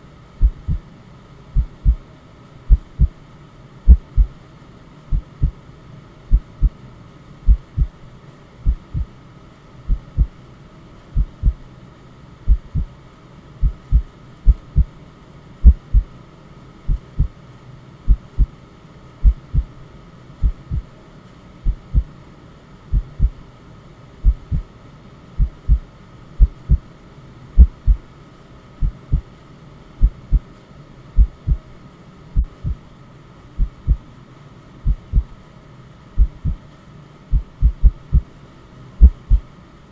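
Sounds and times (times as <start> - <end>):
faint white noise hiss: 0.0 - 39.9
heartbeat thumps: 0.4 - 0.8, 1.6 - 2.0, 2.7 - 3.2, 3.9 - 4.4, 5.1 - 5.6, 6.3 - 6.8, 7.5 - 8.0, 8.6 - 9.1, 9.9 - 10.4, 11.2 - 11.6, 12.5 - 12.9, 13.6 - 14.9, 15.6 - 16.1, 16.9 - 17.4, 18.1 - 18.5, 19.2 - 19.8, 20.4 - 20.9, 21.6 - 22.1, 22.9 - 23.4, 24.2 - 24.7, 25.4 - 25.8, 26.4 - 26.8, 27.6 - 28.0, 28.8 - 29.3, 30.0 - 30.5, 31.2 - 31.6, 32.4 - 32.8, 33.6 - 34.0, 34.8 - 35.4, 36.2 - 36.6, 37.3 - 38.3, 39.0 - 39.5.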